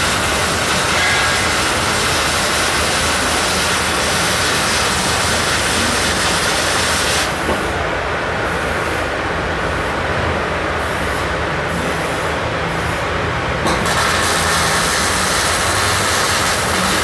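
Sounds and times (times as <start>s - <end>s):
welding arc hissing: 0.0s - 7.5s, 13.7s - 17.0s.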